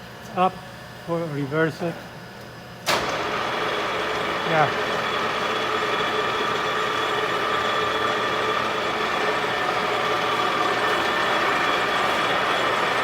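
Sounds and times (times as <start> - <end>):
lathe whining: 2.9 - 13.0.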